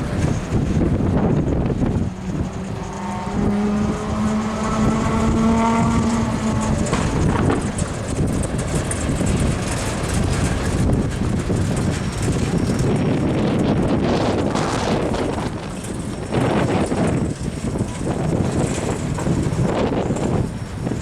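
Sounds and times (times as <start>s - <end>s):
wind buffeting microphone: 0.0s - 21.0s
locomotive air horn chord: 0.2s - 8.3s.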